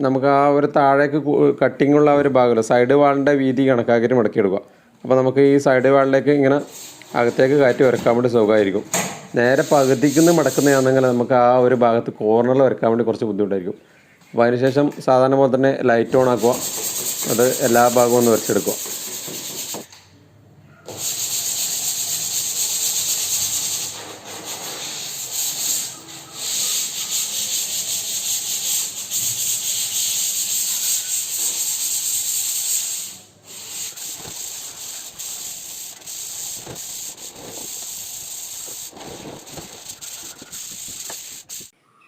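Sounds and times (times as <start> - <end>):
sandpaper scratching: 9.5 - 11.1, 16.1 - 19.9, 20.9 - 41.7.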